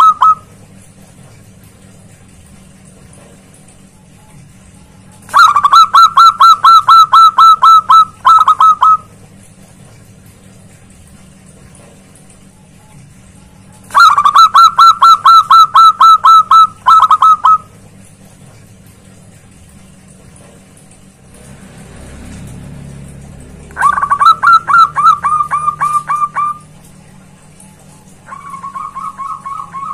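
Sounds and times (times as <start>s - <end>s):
dove cooing: 5.3s - 9.1s, 13.9s - 17.7s, 23.8s - 26.8s, 28.2s - 29.9s.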